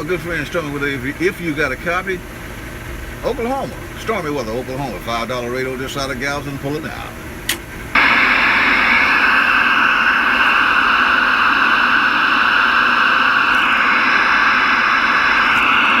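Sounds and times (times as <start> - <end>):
radio static hiss: 8.0 - 16.0.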